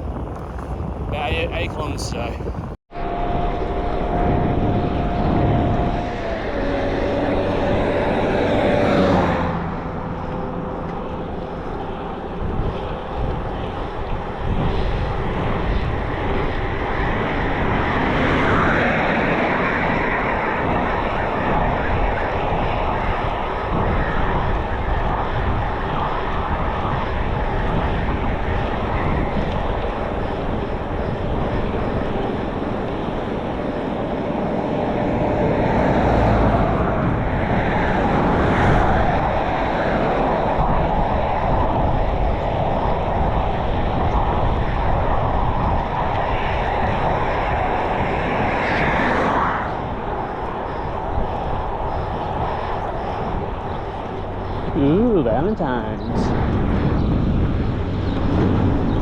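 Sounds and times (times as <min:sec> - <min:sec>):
road traffic noise: 0:00.0 - 0:13.2, 0:29.8 - 0:41.0
wind rushing over microphone: 0:00.0 - 0:59.0.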